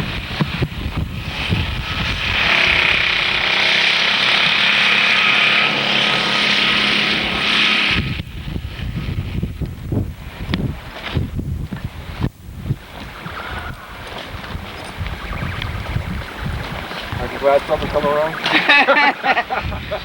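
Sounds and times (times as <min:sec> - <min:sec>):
motor running: 0:00.9 - 0:08.3.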